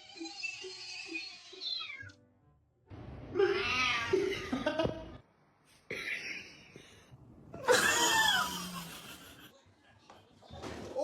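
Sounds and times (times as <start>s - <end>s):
cat meowing: 1.5s - 2.2s.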